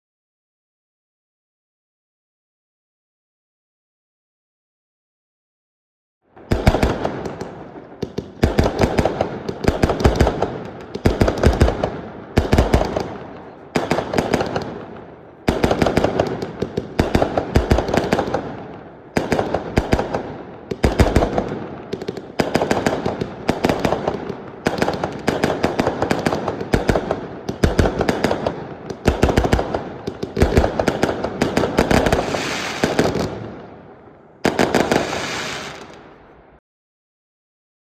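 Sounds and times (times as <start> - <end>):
fireworks bangs and crackling: 6.4 - 36.6.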